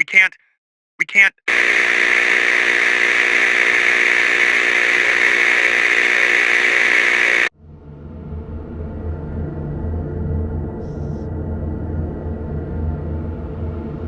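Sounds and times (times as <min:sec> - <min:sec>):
buzzing hum: 0:01.5 - 0:07.5
radio static: 0:01.5 - 0:07.5.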